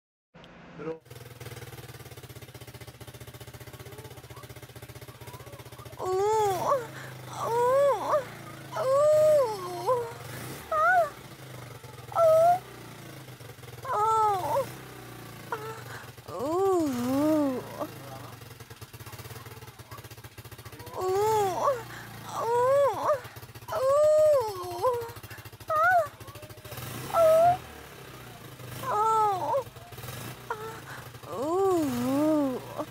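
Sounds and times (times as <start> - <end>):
motorcycle engine idling: 0.5 - 32.9
whining cries: 5.2 - 12.9, 13.8 - 18.4, 20.7 - 27.7, 28.8 - 32.9.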